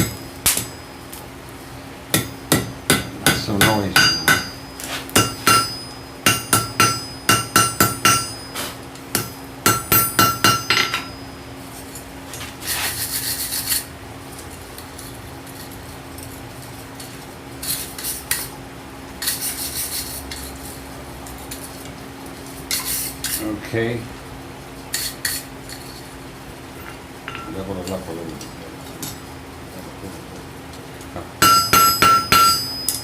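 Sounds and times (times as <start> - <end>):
hammer striking anvil: 0.0 - 0.8, 2.1 - 8.5, 9.1 - 11.2, 26.9 - 27.5, 31.4 - 33.0
steady low hum: 0.0 - 33.0.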